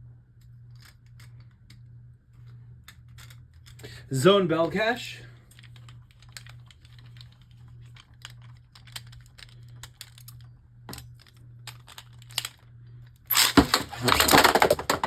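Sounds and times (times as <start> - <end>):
spinning tops clattering in plastic: 5.5 - 12.6, 13.2 - 15.0.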